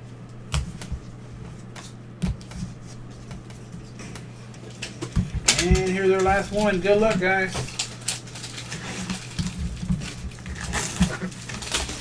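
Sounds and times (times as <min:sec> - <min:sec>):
low electrical hum: 0:00.0 - 0:12.0
cards clicking and tapping: 0:01.7 - 0:12.0.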